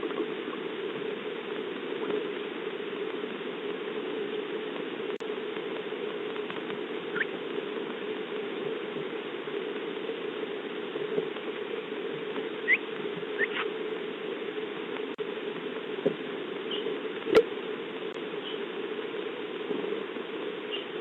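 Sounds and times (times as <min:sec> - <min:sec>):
rain pattering: 0:00.0 - 0:21.0
short rising bird chirps: 0:12.6 - 0:12.8, 0:13.4 - 0:13.7.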